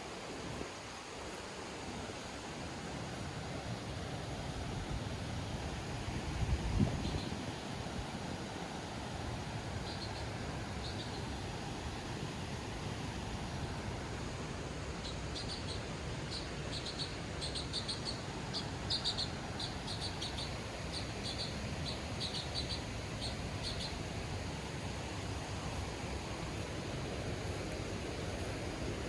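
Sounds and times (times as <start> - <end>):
small bird chirping: 15.0 - 24.0
steady rushing background noise: 19.6 - 29.0.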